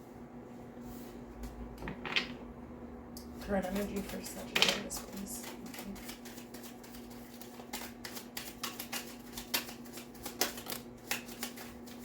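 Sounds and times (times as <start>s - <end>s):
playing cards being shuffled: 3.7s - 12.0s.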